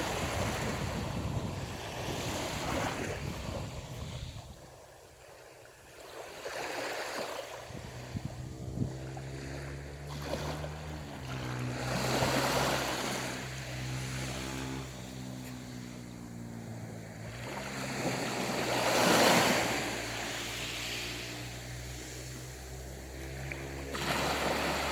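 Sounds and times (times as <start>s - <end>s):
sea waves washing onto shore: 0.0s - 24.9s
low motor hum: 7.6s - 24.9s.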